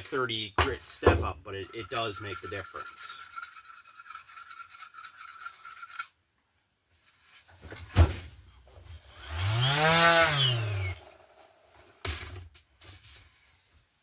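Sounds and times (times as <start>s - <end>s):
orbital sander motor hum: 9.1s - 11.1s.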